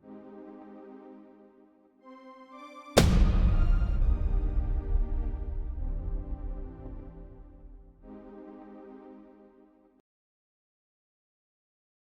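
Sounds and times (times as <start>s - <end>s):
deep low rumble: 3.2s - 8.0s.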